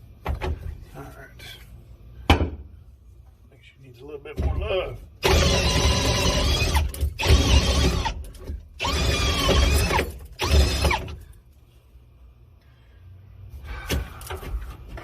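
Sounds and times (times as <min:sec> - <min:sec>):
handheld power tool motor: 0:05.2 - 0:11.2.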